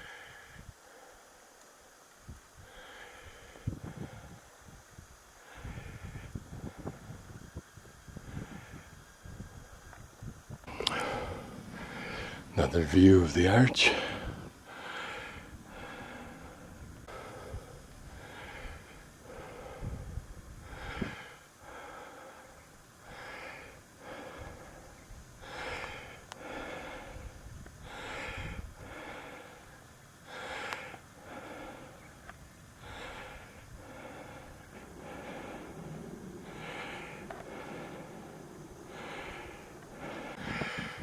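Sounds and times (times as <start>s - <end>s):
person breathing hard: 0.0s - 1.6s, 2.6s - 4.6s, 5.2s - 7.0s, 10.6s - 12.6s, 13.8s - 32.2s, 32.8s - 41.0s.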